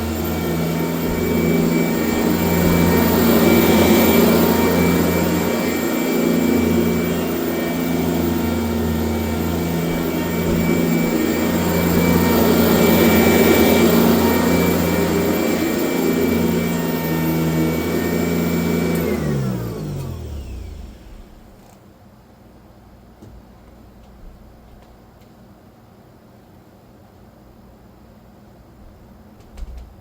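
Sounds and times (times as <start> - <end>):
vacuum cleaner running: 0.0 - 21.6.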